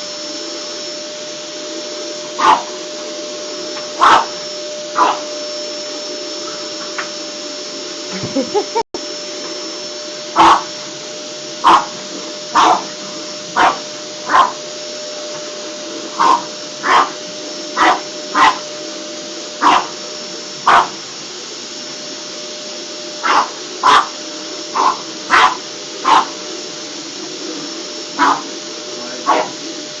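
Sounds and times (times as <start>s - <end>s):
vacuum cleaner running: 0.0s - 30.0s
dog barking: 2.4s - 2.7s, 4.0s - 4.4s, 5.0s - 5.3s, 10.4s - 10.7s, 11.6s - 12.9s, 13.6s - 14.6s, 16.2s - 17.2s, 17.8s - 18.7s, 19.6s - 20.0s, 20.6s - 21.0s, 23.2s - 26.3s, 28.2s - 28.5s, 29.2s - 29.6s
dog yelping: 2.4s - 2.7s, 4.0s - 4.4s, 5.0s - 5.3s, 10.4s - 10.7s, 11.6s - 11.9s, 12.6s - 12.9s, 13.6s - 14.6s, 16.2s - 17.2s, 17.8s - 18.6s, 19.6s - 20.0s, 20.7s - 20.9s, 23.2s - 24.2s, 24.8s - 26.3s, 28.2s - 28.5s, 29.2s - 29.6s.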